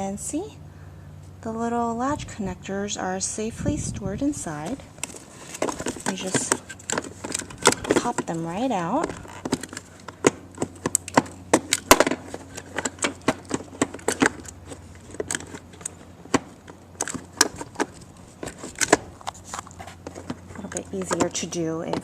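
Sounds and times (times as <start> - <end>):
connectors clicking and knocking: 4.6 - 22.0.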